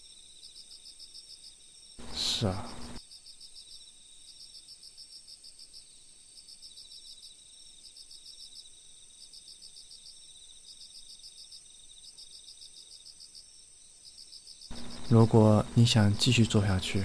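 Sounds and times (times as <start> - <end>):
crickets chirping: 0.0 - 17.0
high-pitched insect tone: 2.0 - 3.8, 14.7 - 17.0.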